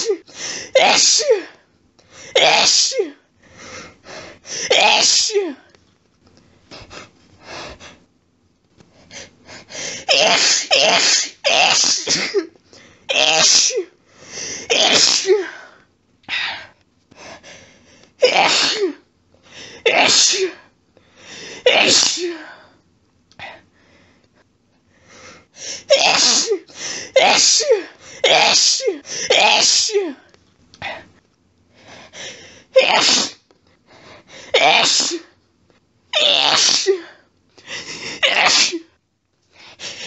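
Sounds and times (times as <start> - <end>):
woman sneezing: 0.0 - 1.6, 2.3 - 3.2, 4.6 - 5.6, 10.0 - 12.5, 13.1 - 13.9, 14.7 - 15.6, 18.2 - 19.0, 19.8 - 20.6, 21.6 - 22.5, 25.8 - 30.2, 32.7 - 33.5, 34.5 - 35.4, 36.1 - 37.2, 38.0 - 38.9.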